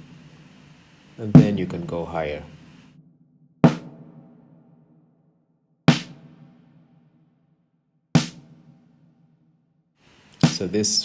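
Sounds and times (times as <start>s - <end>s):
snare drum hits: 1.3s - 2.2s, 3.6s - 4.1s, 5.9s - 6.6s, 8.2s - 8.7s, 10.4s - 10.9s.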